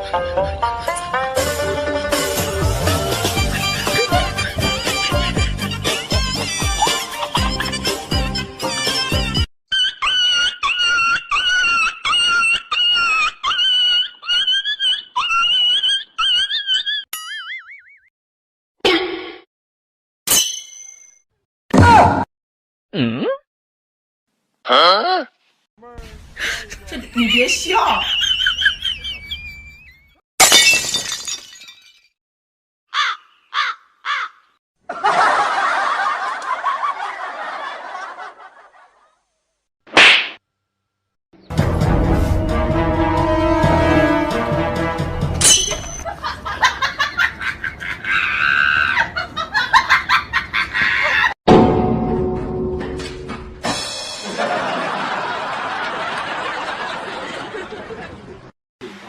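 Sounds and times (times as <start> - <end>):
person laughing: 3.4 - 5.0, 6.6 - 8.0, 9.7 - 17.1, 46.0 - 51.4.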